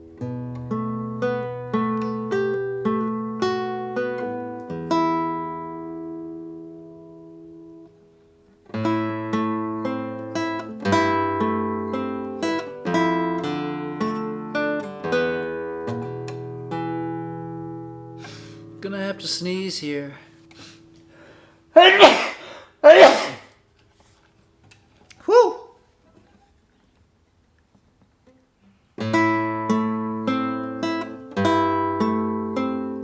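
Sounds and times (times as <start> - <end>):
acoustic guitar music: 0.0 - 21.6, 28.2 - 33.0.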